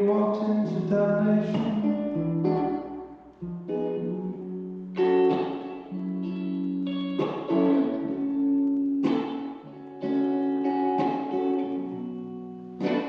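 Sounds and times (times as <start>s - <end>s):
person singing: 0.0s - 2.7s
acoustic guitar chords: 0.0s - 13.0s.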